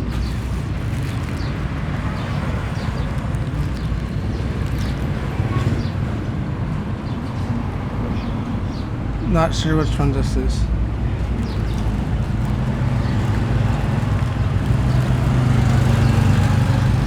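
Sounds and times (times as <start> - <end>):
low outdoor rumble: 9.8 - 17.0.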